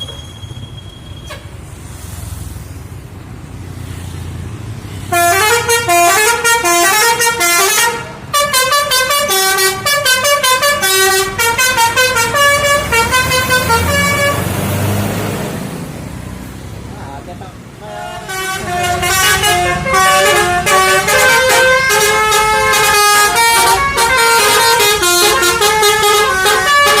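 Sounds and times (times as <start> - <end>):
bus horn playing fast melody: 5.1 - 14.7, 17.8 - 27.0.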